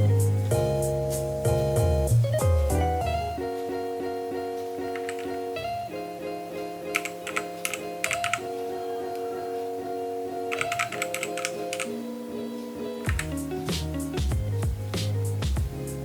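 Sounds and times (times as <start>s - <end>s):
background music with sustained chords: 0.0s - 16.0s
mechanical keyboard keystrokes: 4.9s - 5.4s, 6.9s - 8.5s, 10.5s - 12.0s.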